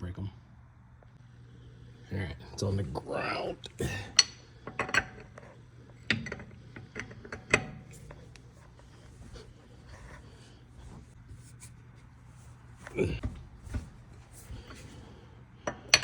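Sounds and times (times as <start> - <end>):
lug wrench metallic clanks: 6.0 - 8.2, 15.7 - 16.0.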